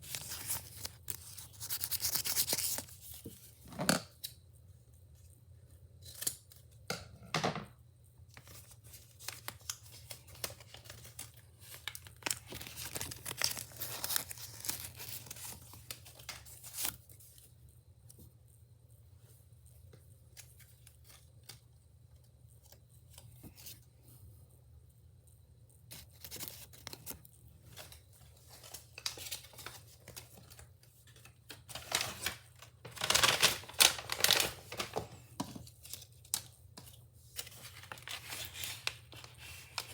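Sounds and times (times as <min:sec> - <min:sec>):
packaging tearing and crinkling: 0:00.0 - 0:03.0, 0:09.2 - 0:17.0, 0:31.2 - 0:35.2.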